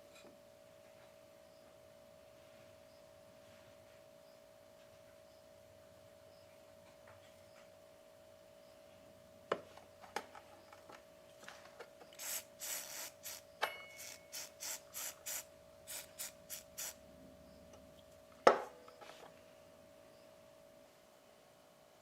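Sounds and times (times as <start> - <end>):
faint steady tone: 12.0 - 22.0.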